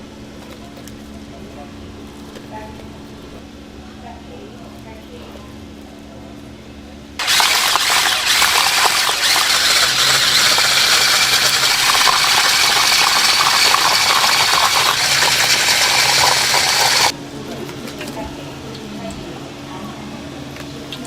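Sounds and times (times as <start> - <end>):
chicken sizzling in hot oil: 7.2 - 17.1
oil crackling: 7.2 - 17.1.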